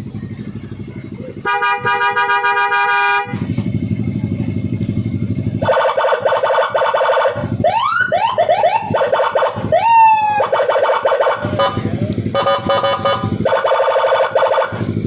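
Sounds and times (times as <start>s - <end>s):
deeper siren tone: 5.5s - 15.0s
electronic siren cycling tones: 5.6s - 14.9s.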